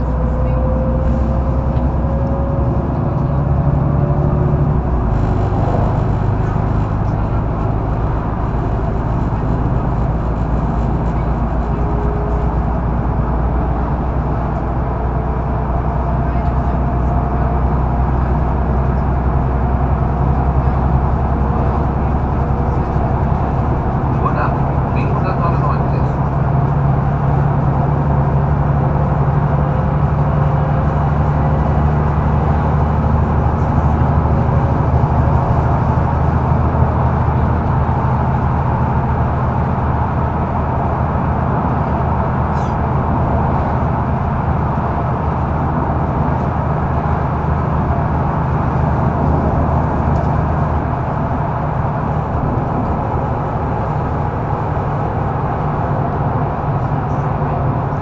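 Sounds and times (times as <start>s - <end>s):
bus engine drone: 0.0s - 58.0s
road noise: 0.0s - 58.0s.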